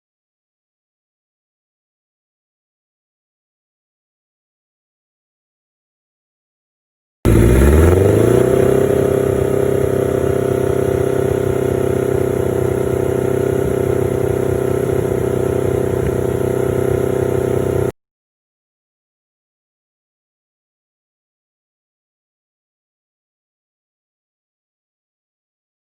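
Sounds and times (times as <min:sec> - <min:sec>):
motorcycle engine running: 0:07.3 - 0:17.9.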